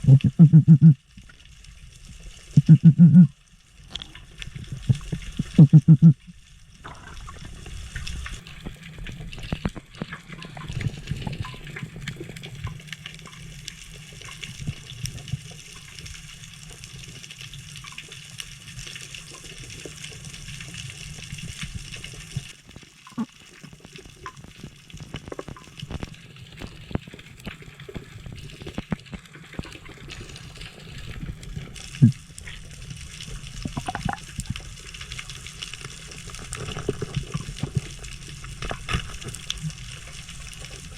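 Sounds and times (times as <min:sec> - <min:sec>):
sharp clicks and crackles: 0:00.0 - 0:40.9
underwater rush of water: 0:00.0 - 0:40.9.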